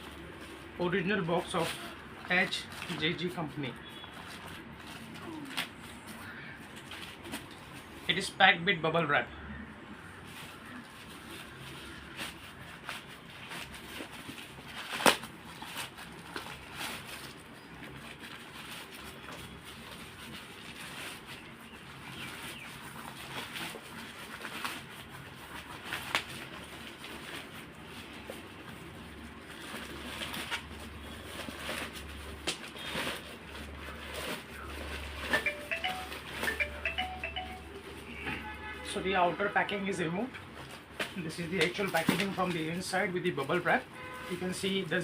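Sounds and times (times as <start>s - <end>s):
plastic packaging crinkling: 10.3s - 37.2s, 40.5s - 42.8s.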